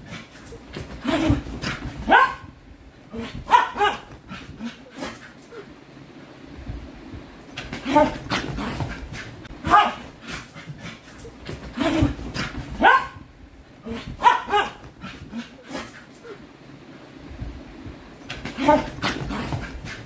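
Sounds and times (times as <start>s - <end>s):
dog barking and yipping: 1.7s - 2.6s, 3.4s - 4.2s, 9.6s - 10.1s, 12.4s - 13.3s, 14.1s - 14.9s.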